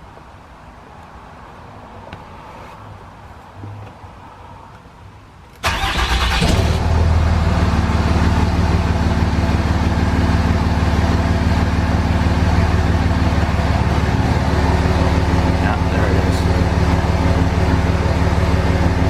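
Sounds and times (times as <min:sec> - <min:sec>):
diesel engine idling: 0:05.6 - 0:19.0.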